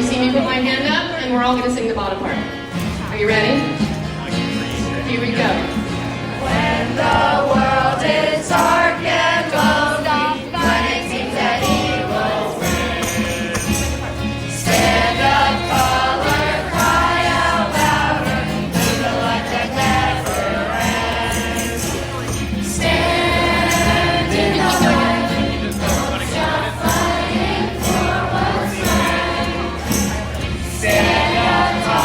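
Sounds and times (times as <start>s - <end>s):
children's choir singing: 6.2s - 32.0s.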